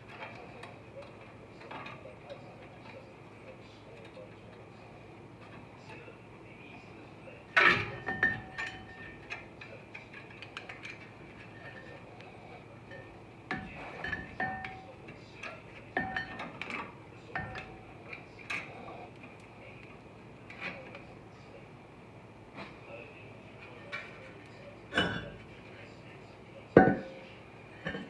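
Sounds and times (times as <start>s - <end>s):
metal tools clinking: 26.8s - 28.0s.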